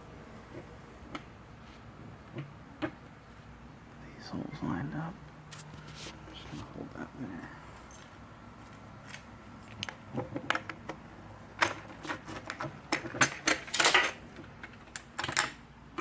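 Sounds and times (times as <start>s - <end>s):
hard parts clicking and knocking: 9.1s - 16.0s.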